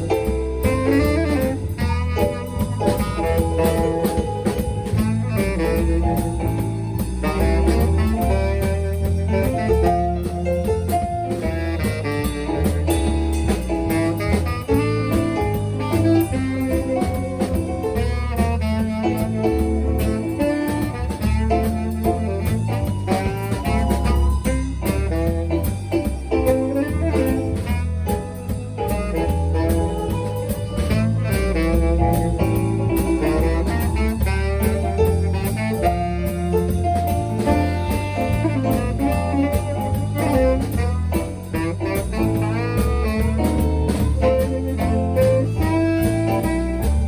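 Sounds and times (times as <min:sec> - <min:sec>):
band playing blues or jazz: 0:00.0 - 0:47.0.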